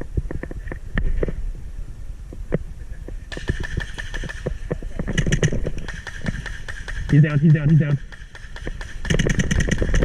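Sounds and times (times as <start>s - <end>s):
sharp clicks and knocks: 3.3s - 10.0s.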